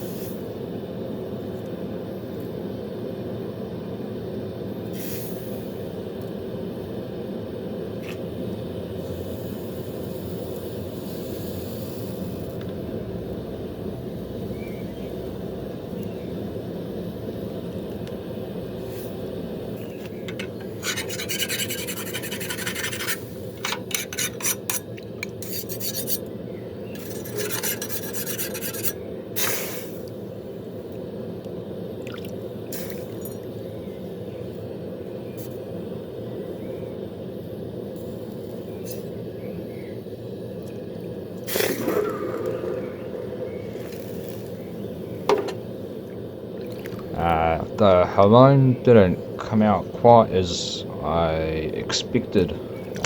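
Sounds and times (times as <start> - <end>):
rasping on steel blade: 20.3 - 26.3, 27.0 - 29.0
low hum: 40.9 - 53.0.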